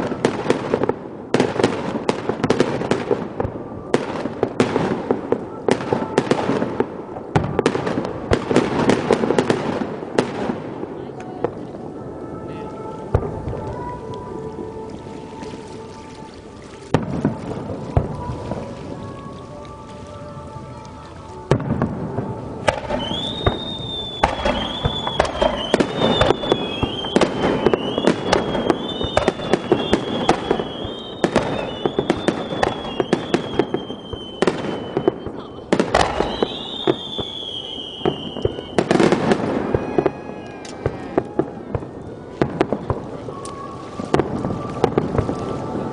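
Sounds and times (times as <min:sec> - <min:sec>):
firework bangs: 0:00.0 - 0:14.0, 0:16.9 - 0:19.0, 0:21.5 - 0:45.9
crackling firework bursts: 0:00.0 - 0:14.9, 0:16.9 - 0:45.9
high wavering whistle: 0:22.3 - 0:38.9.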